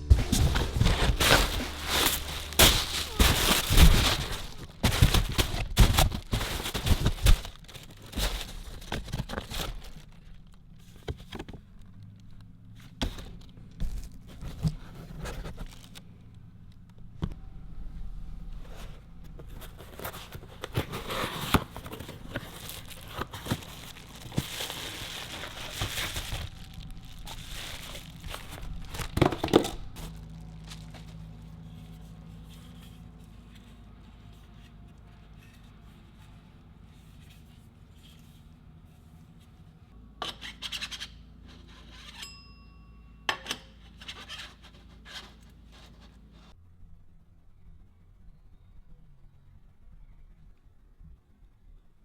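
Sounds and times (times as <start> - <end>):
packaging crinkling: 0.0 - 10.8, 19.5 - 33.6.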